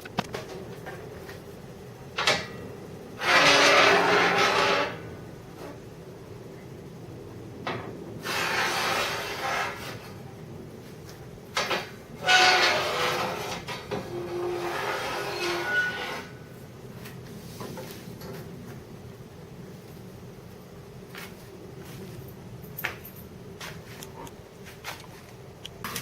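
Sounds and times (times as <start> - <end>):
grinding steel plate edges: 3.2 - 5.8, 8.2 - 10.2, 11.6 - 16.4.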